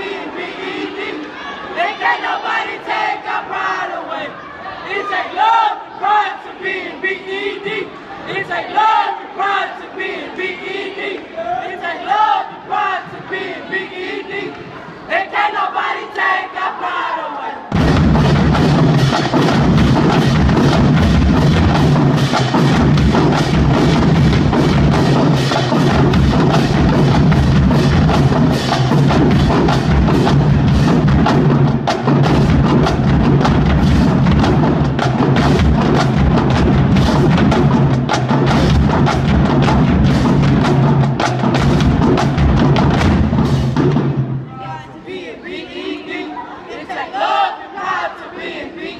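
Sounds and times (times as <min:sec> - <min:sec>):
bass drum beats: 0:17.7 - 0:44.4
snare and tenor drum strikes: 0:17.7 - 0:44.5.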